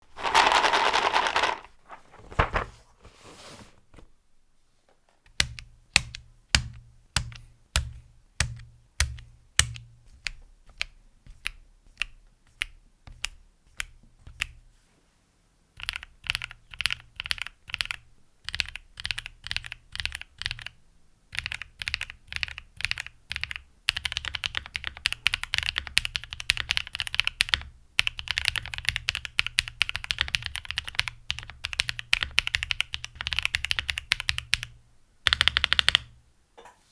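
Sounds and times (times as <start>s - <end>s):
typing on mechanical keyboard: 0.2s - 1.6s, 15.8s - 36.1s.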